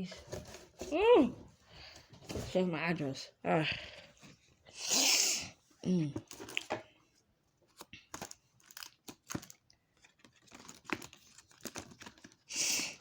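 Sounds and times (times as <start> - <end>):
packaging rustling and crinkling: 7.6 - 12.5.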